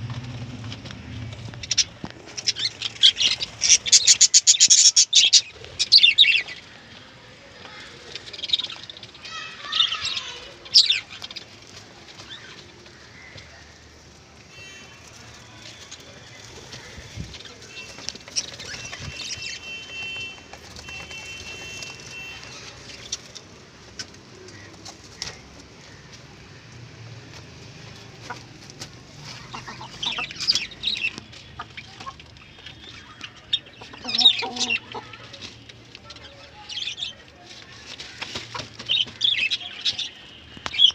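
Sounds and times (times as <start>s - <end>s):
wings flapping: 15.0s - 25.6s
chickens clucking: 27.3s - 36.3s, 37.8s - 39.2s.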